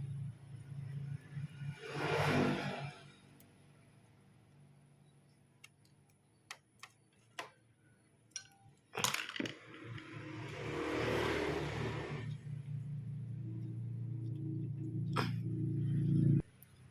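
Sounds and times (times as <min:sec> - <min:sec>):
tools and metal parts tapping: 0:08.3 - 0:10.5.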